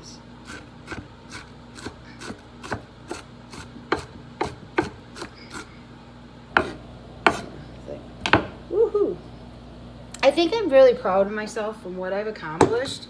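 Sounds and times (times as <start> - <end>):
knife chopping on wooden board: 0.5 - 5.7, 6.5 - 7.6, 8.2 - 8.6.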